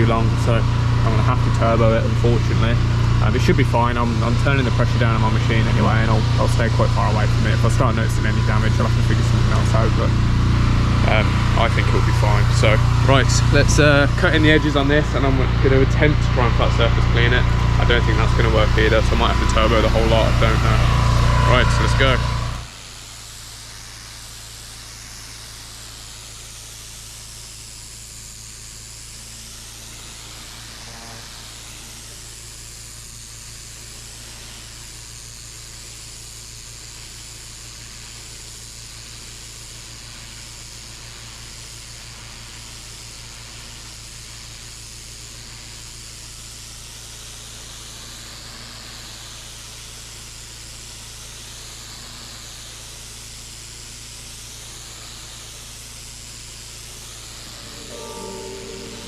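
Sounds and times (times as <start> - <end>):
pressure washer machine hum: 0.0 - 38.2, 56.6 - 58.2
high-pressure water jet hissing: 0.0 - 57.9.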